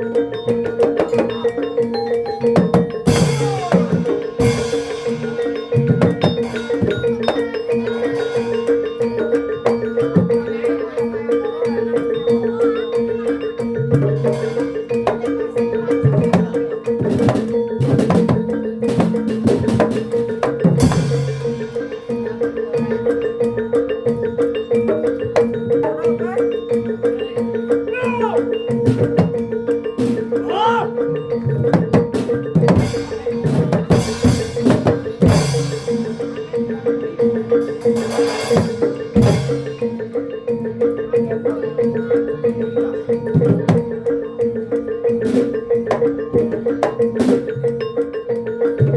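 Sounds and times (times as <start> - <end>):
drum strokes: 0.0 - 11.2, 13.7 - 48.0
steady ringing tone: 0.0 - 16.9
struck metal instruments: 0.1 - 11.1, 13.4 - 47.9.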